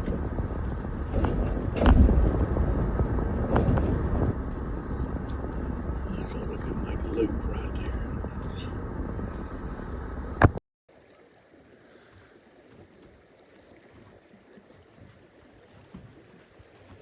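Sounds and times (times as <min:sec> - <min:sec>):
vehicle travel rumble: 0:00.0 - 0:10.6.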